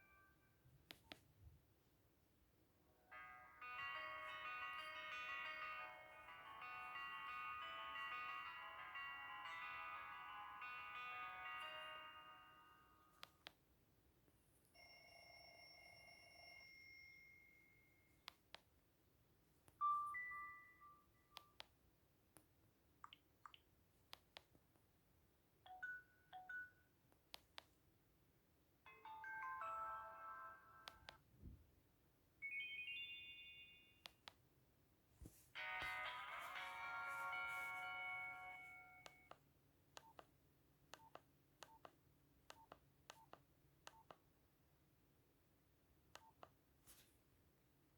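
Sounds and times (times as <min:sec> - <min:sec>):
ringtone melody: 0:03.1 - 0:13.1, 0:19.8 - 0:21.2, 0:28.9 - 0:31.2, 0:32.4 - 0:34.0, 0:35.6 - 0:39.3.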